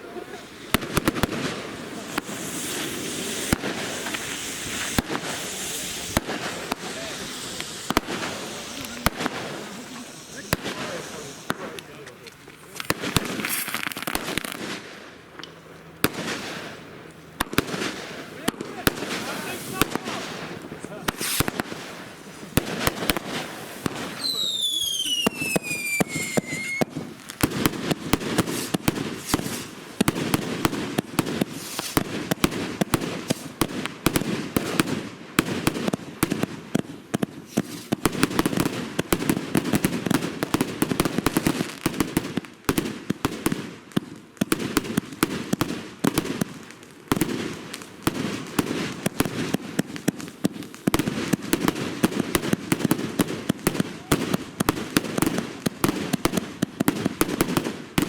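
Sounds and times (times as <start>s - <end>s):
low rumble of launches: 0.0s - 27.2s
fireworks crackling and banging: 0.0s - 58.0s
falling firework whistle: 23.8s - 27.0s.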